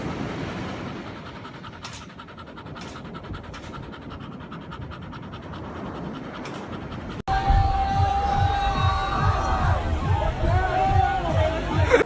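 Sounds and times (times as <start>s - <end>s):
dog panting: 0.5s - 7.3s.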